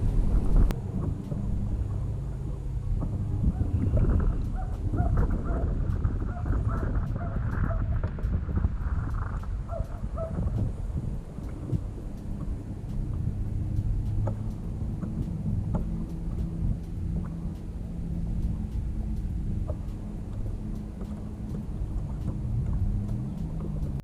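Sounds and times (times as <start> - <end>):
light ticks: 0.0 - 24.0
wind buffeting microphone: 0.0 - 24.0.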